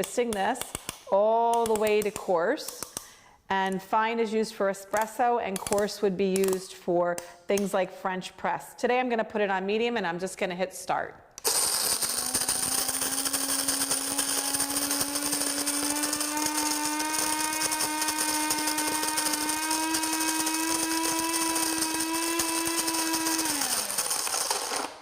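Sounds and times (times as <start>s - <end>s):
coffee grinder running: 11.4s - 25.0s.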